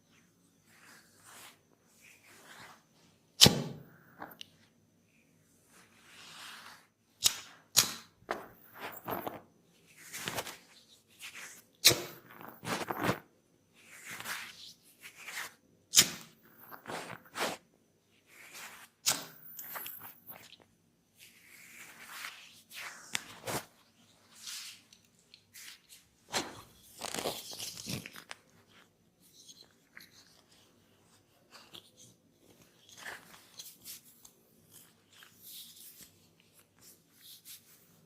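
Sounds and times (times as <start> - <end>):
hands rubbing hair and skin: 0.7 - 2.9, 8.3 - 11.6.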